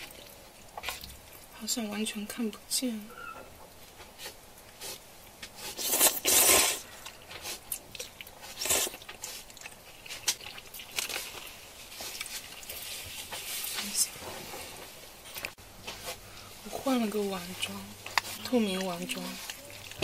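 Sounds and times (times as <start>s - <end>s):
crunching bites and chewing: 4.2s - 13.0s.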